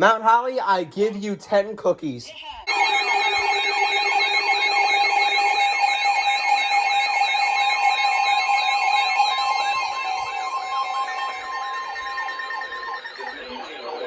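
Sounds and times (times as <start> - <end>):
falling siren sweeps: 2.7 - 14.0
two-tone alert signal: 2.7 - 14.0
warbling tone: 8.5 - 14.0.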